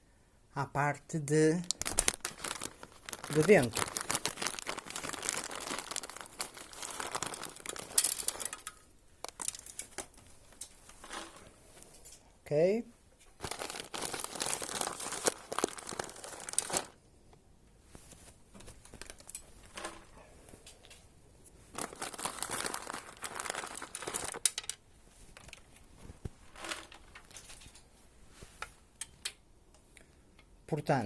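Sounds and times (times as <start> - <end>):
dried corn rustling and clicking: 1.6 - 12.3, 18.0 - 21.0, 21.7 - 27.9.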